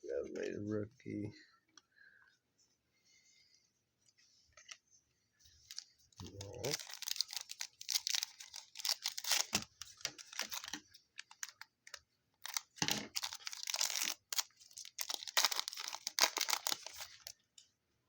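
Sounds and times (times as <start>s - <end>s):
foil wrapper tearing and crinkling: 6.4s - 11.6s, 12.4s - 17.4s.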